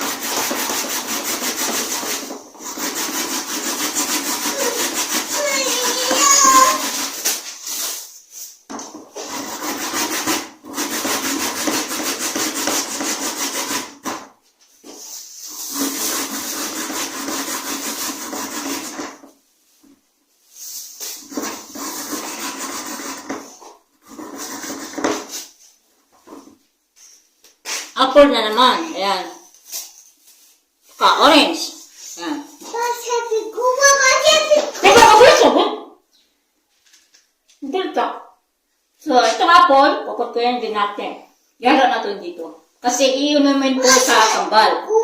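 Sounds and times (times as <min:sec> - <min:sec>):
grater rasping: 0:00.0 - 0:07.9, 0:09.2 - 0:14.0, 0:15.5 - 0:19.2, 0:21.2 - 0:25.3.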